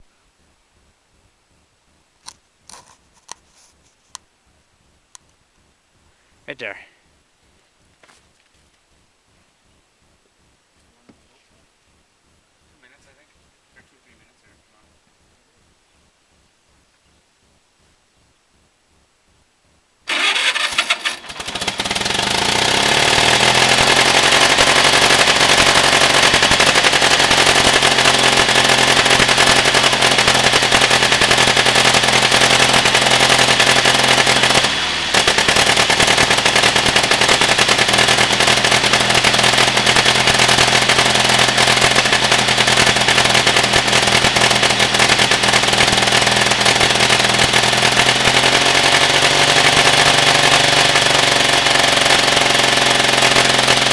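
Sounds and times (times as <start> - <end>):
small gasoline engine running: 20.1 - 53.9.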